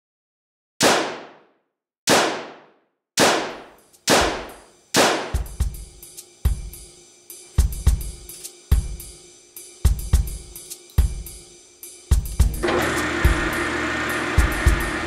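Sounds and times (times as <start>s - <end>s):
sharp bangs: 2.1s - 5.6s
music with deep bass and drums: 5.4s - 15.0s.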